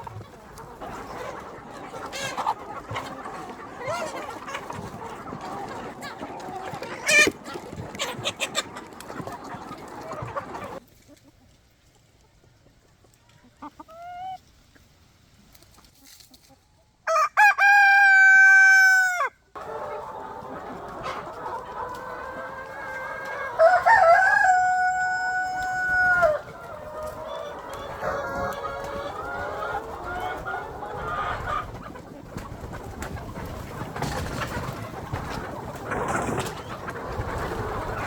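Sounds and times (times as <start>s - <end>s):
chickens clucking: 0.0s - 38.0s
rooster crowing: 23.5s - 26.4s.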